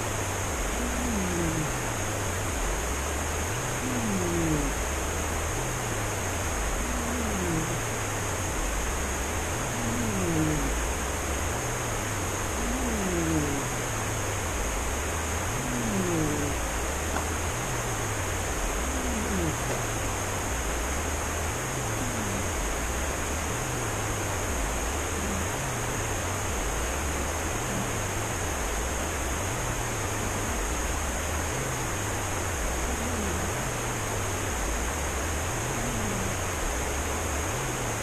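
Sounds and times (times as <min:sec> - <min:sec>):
steady hiss: 0:00.0 - 0:38.0
cat snoring: 0:00.7 - 0:02.1, 0:03.6 - 0:06.0, 0:06.7 - 0:08.1, 0:08.8 - 0:10.9, 0:12.4 - 0:14.0, 0:15.4 - 0:20.0, 0:21.5 - 0:24.0, 0:24.8 - 0:26.5, 0:27.1 - 0:28.4, 0:29.5 - 0:34.6, 0:35.6 - 0:36.6.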